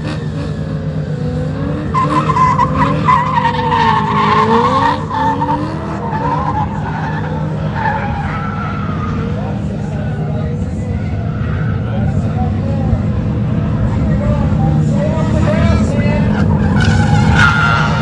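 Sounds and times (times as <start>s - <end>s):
car engine at high revs: 0.0s - 18.0s
tyres squealing: 1.9s - 9.5s.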